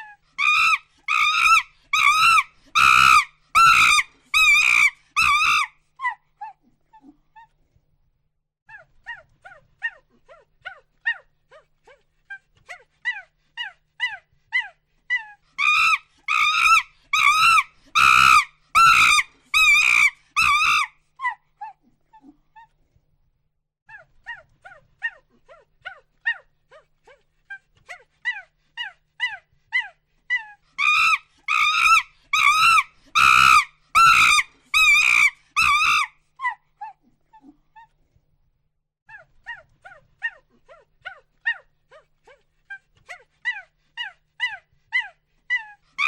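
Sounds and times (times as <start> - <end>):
monkey hooting: 0.0 - 6.2, 15.1 - 21.4, 28.3 - 36.6
monkey short calls: 0.4 - 5.7, 15.6 - 20.9, 30.8 - 36.6.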